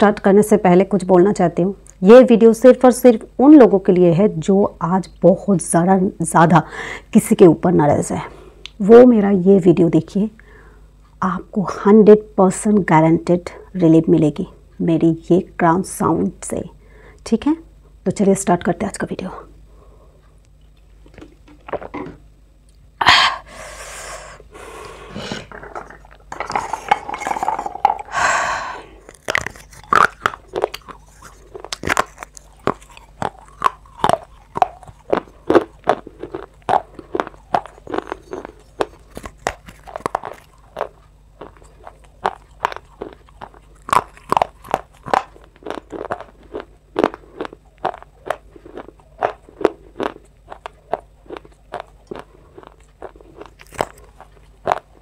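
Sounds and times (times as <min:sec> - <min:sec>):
dry clay crunching when chewed: 0:20.2 - 0:22.2, 0:29.0 - 0:55.0.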